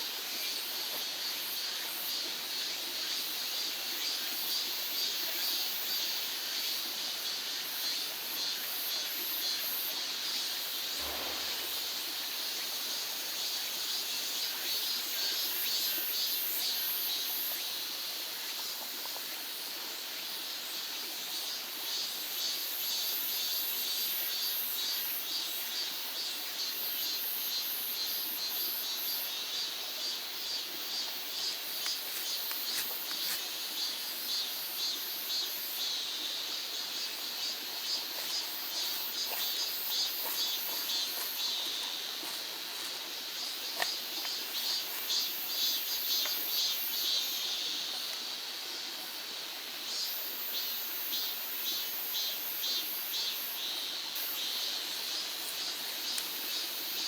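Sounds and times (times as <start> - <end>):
insects chirping: 0.5 - 18.7, 21.4 - 57.0
soft hiss: 10.3 - 15.8
low thump: 11.0 - 12.4.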